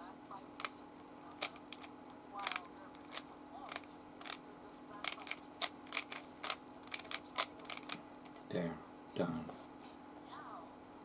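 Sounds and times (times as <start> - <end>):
puzzle cube clicking: 1.3 - 4.4, 5.0 - 8.0.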